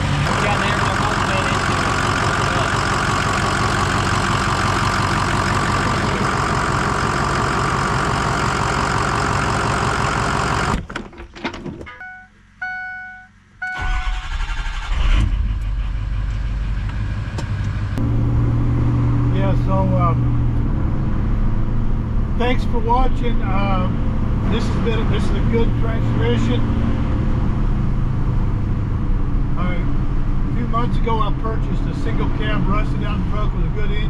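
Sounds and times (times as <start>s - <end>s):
diesel engine rumbling: 0.0s - 34.0s
short beeps: 11.9s - 14.2s.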